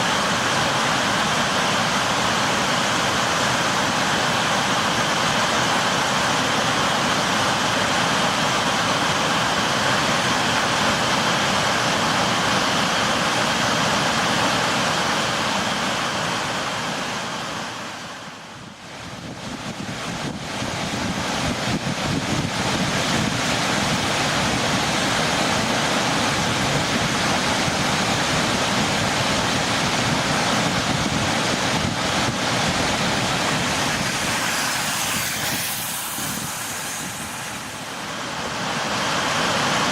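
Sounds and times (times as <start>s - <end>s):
rushing flood water roar: 0.0s - 39.9s.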